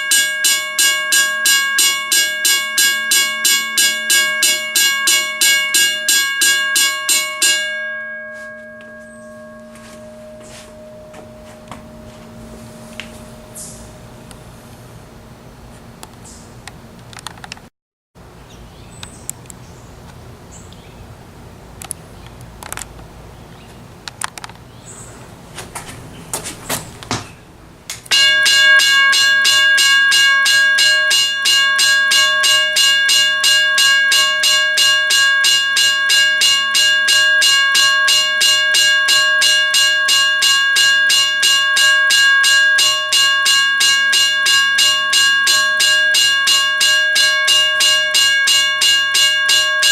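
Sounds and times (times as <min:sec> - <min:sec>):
mechanical crossing bell ringing: 0:00.0 - 0:14.1, 0:28.1 - 0:49.9
low hum: 0:07.0 - 0:16.1.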